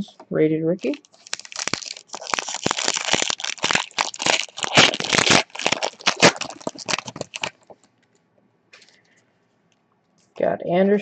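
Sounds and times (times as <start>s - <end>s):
plastic wrapper crinkling and tearing: 0.8s - 7.9s.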